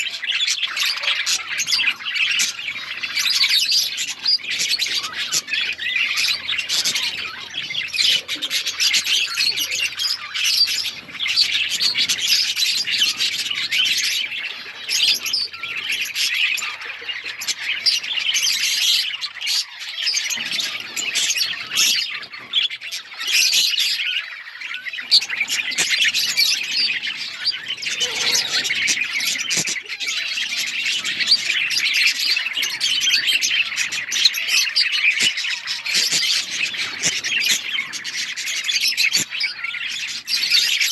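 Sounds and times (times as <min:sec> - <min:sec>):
budgies chattering and chirping: 0:00.0 - 0:40.9.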